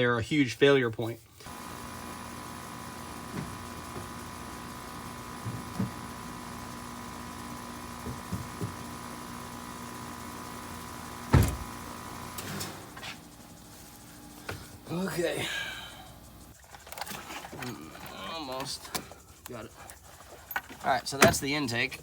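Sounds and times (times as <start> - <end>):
steady hum: 1.4 - 16.6
engine parts knocking and clunking: 1.5 - 12.4
loud thump: 11.3 - 11.7.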